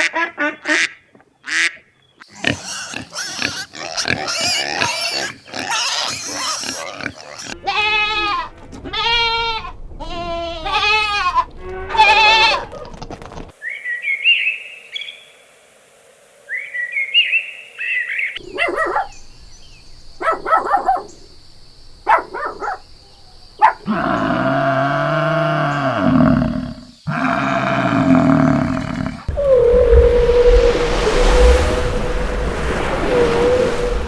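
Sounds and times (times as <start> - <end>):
wavering bleats: 2.3 - 12.8, 23.8 - 29.3
deep roar: 23.7 - 34.0.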